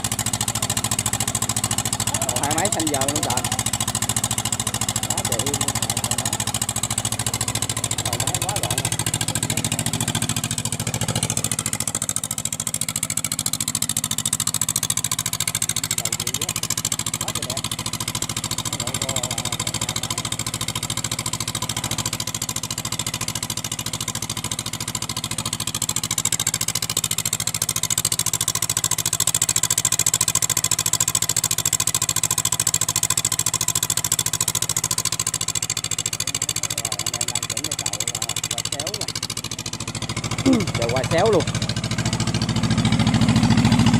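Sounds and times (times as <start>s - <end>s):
two-cylinder engine running: 0.0s - 43.9s.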